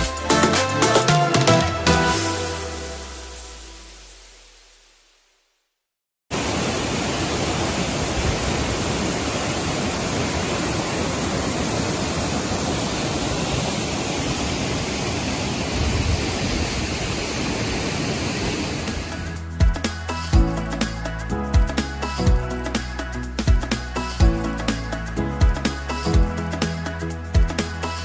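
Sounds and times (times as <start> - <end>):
waterfall rushing: 6.3 - 19.4.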